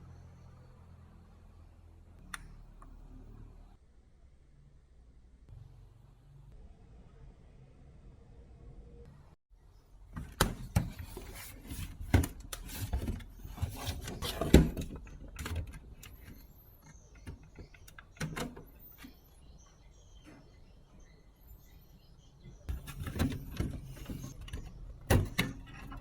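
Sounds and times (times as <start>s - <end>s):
handling knocks and rubbing: 10.2s - 19.2s.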